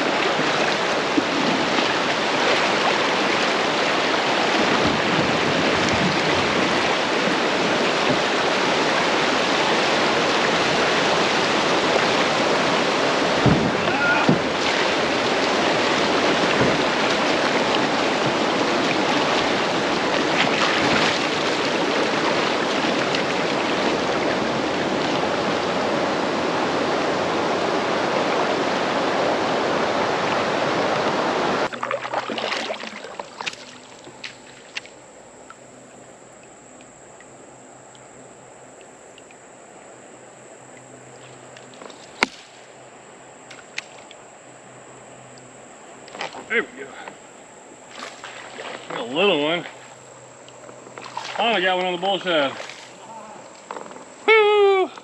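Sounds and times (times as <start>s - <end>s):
rushing creek water: 0.0s - 55.0s.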